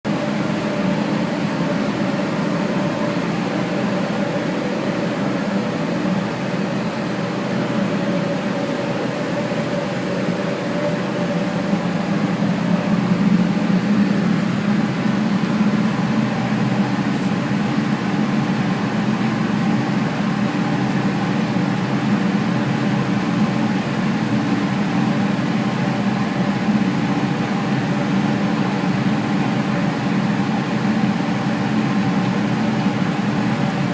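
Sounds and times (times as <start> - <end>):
steam boiler rushing: 0.1 - 33.9.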